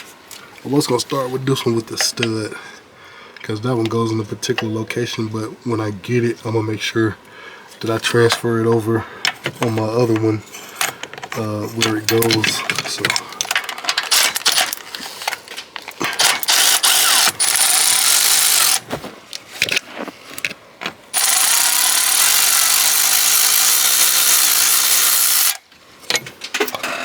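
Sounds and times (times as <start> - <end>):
metallic clicks and knocks: 9.2 - 17.6
handheld power tool running: 14.0 - 14.8, 16.0 - 18.8, 21.2 - 25.7.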